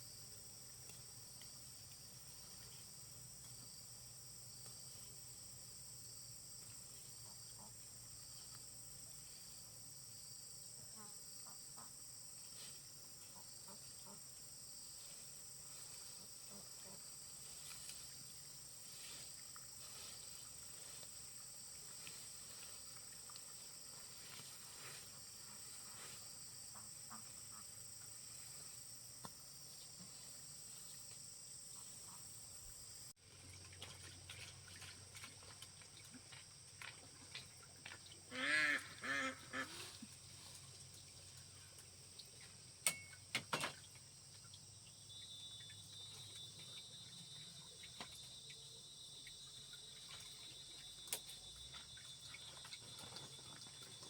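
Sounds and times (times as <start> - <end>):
ducks quacking: 38.3 - 39.9.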